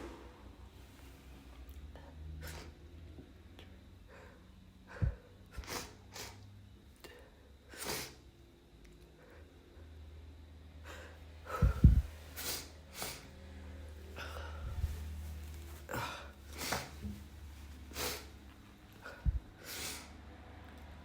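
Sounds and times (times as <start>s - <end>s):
breathy sniffs and huffs: 4.1s - 6.4s, 10.8s - 13.4s, 15.8s - 17.0s, 17.8s - 18.4s, 19.0s - 20.3s
stifled sneezes: 5.5s - 6.4s, 7.7s - 8.2s, 11.5s - 13.3s, 15.8s - 17.0s, 19.0s - 20.2s.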